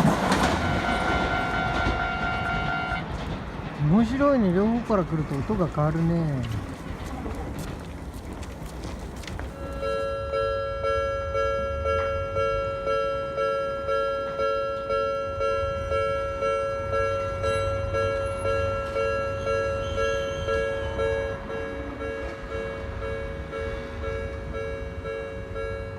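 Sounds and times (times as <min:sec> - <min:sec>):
railroad crossing bell ringing: 0:00.0 - 0:03.2, 0:09.5 - 0:25.9.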